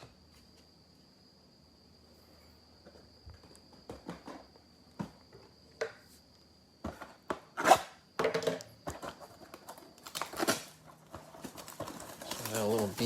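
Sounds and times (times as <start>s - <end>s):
cards and packaging handled: 8.9s - 13.0s.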